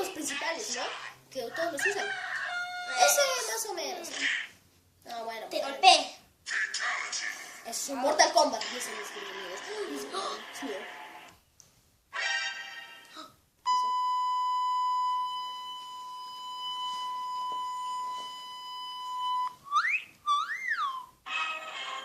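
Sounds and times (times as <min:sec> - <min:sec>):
high electronic beep: 0:13.7 - 0:21.0
sliding whistle-like tones: 0:13.7 - 0:21.8.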